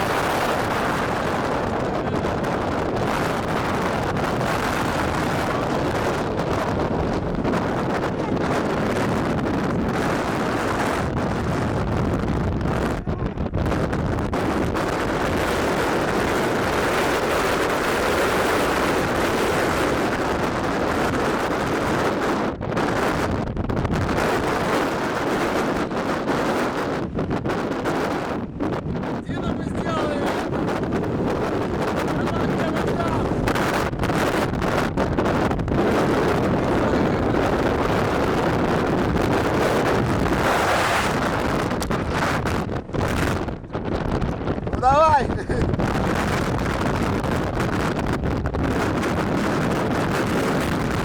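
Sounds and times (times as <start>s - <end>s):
wind buffeting microphone: 0.0s - 51.0s.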